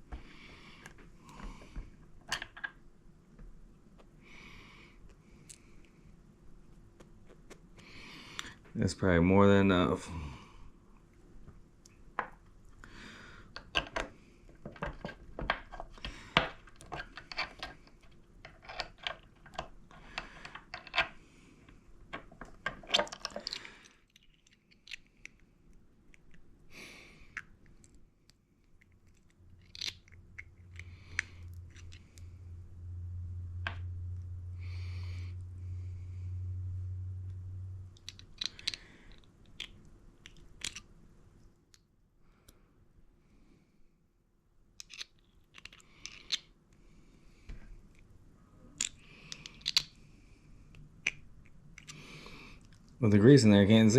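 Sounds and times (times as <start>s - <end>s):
low hum: 28.9s - 39.2s.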